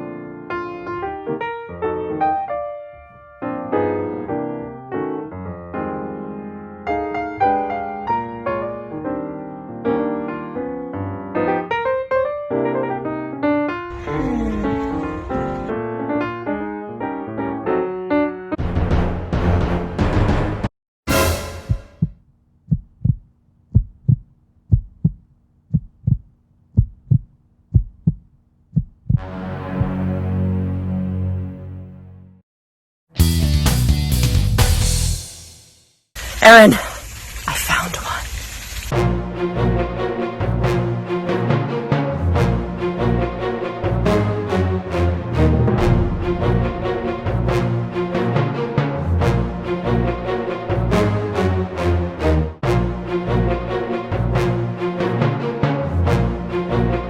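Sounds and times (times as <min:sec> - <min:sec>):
piano music: 0:00.0 - 0:18.6, 0:39.0 - 0:57.0
heartbeat thumps: 0:21.6 - 0:30.0
music swell: 0:44.8 - 0:50.7.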